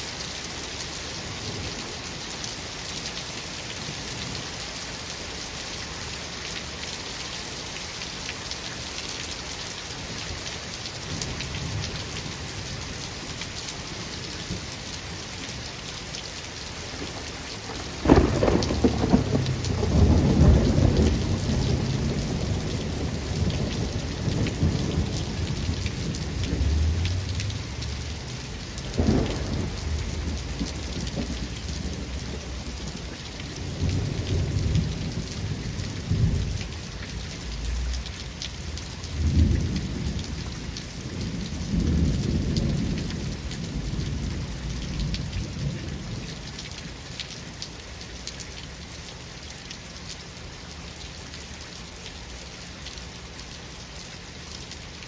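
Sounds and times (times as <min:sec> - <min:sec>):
steady rain falling: 0:00.0 - 0:55.0
sharp thunder claps: 0:17.0 - 0:25.7, 0:28.9 - 0:32.4
rolling thunder: 0:17.0 - 0:36.7, 0:38.7 - 0:46.2.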